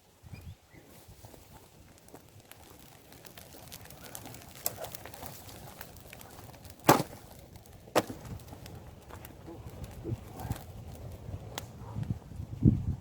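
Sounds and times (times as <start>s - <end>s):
faint crackles and clicks: 0.0s - 13.0s
axe striking wood: 6.9s - 7.2s.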